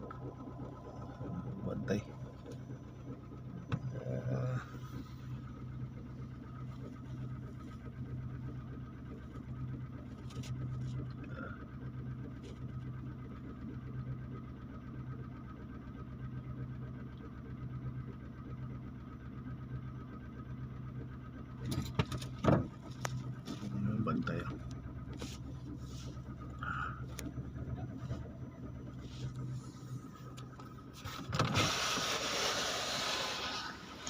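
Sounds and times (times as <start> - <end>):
small engine humming: 0.0 - 34.0.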